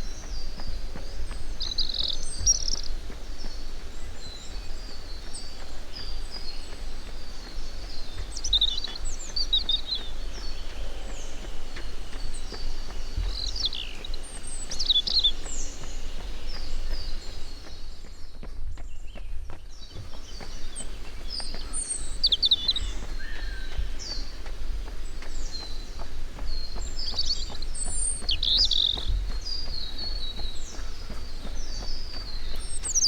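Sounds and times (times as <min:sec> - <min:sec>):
small birds chirping: 0:00.0 - 0:33.0.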